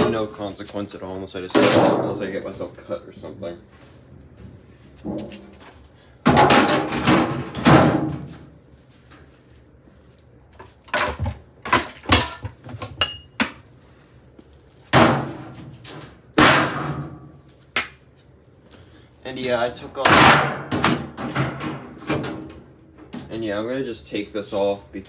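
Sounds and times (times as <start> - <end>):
heavy metallic bangs: 20.0 - 22.0.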